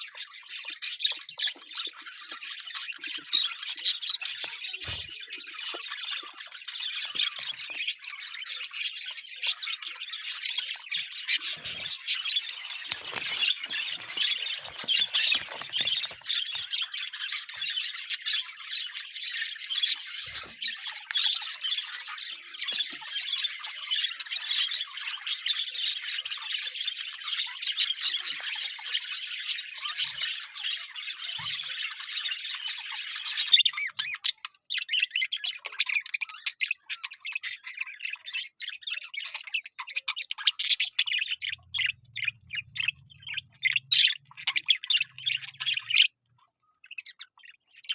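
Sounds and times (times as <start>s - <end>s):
parrots chattering and squawking: 2.2s - 18.9s, 38.2s - 46.2s.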